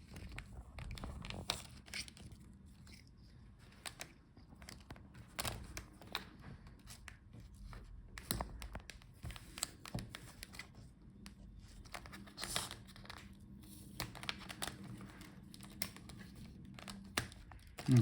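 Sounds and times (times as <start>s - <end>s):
small clicks and taps: 3.6s - 17.9s.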